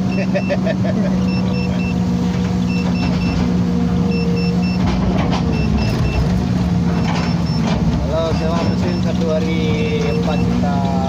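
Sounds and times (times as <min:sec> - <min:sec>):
diesel engine running: 0:00.0 - 0:11.0
warning alarm beeping: 0:01.2 - 0:04.9, 0:05.5 - 0:06.3, 0:06.9 - 0:10.6.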